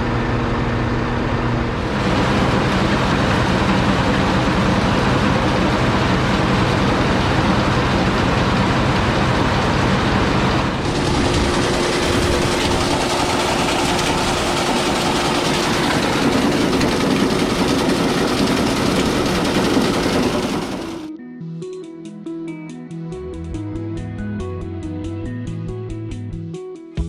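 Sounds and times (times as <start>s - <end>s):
heavy farm machinery running: 0.0s - 21.1s.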